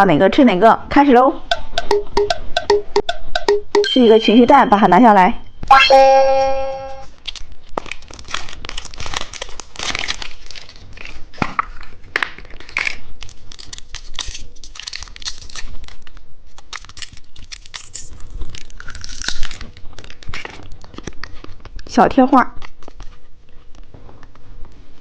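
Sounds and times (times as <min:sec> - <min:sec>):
candy wrapper tearing and crinkling: 0:07.0 - 0:21.9, 0:22.5 - 0:23.2.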